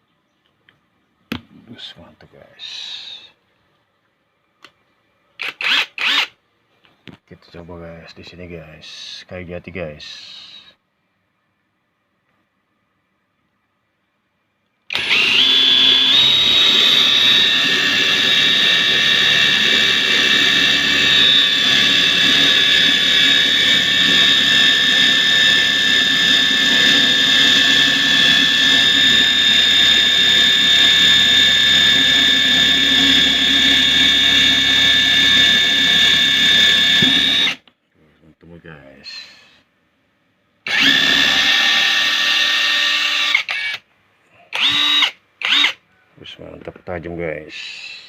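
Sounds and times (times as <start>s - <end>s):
impact wrench motor whine: 5.4s - 6.3s, 14.9s - 37.6s, 40.7s - 43.8s, 44.5s - 45.8s.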